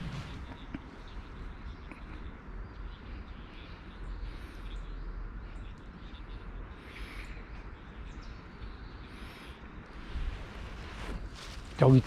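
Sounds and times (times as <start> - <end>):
wind rumble on microphone: 0.0 - 4.2, 9.6 - 12.0
birds calling: 0.0 - 12.0.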